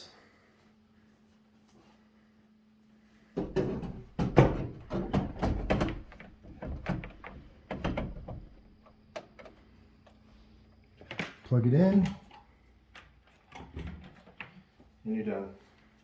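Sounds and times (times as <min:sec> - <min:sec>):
tv brackets knocking on wall mount: 0:03.4 - 0:08.7.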